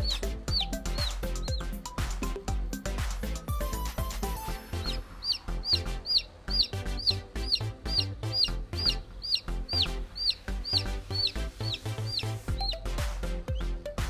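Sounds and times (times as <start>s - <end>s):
background music with bass beat: 0.0s - 14.0s
chick peeping: 6.1s - 7.6s, 9.2s - 11.4s.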